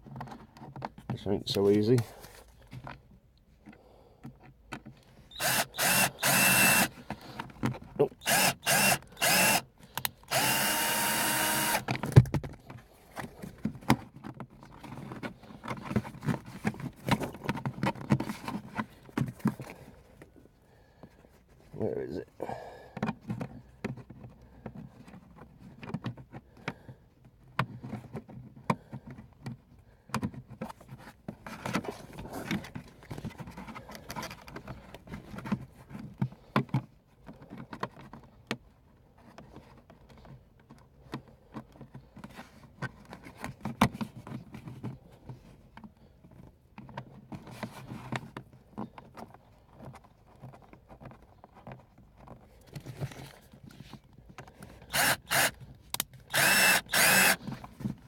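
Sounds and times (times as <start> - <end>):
hands working plastic trim: 4.3 - 12.7, 46.8 - 58.0.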